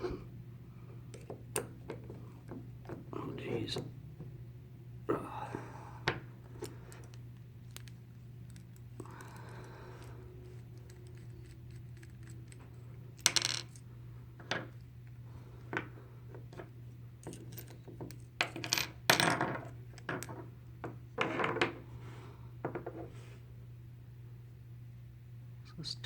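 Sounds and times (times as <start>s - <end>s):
steady low hum: 0.0s - 26.0s
metal clinks and knocks: 17.2s - 20.4s.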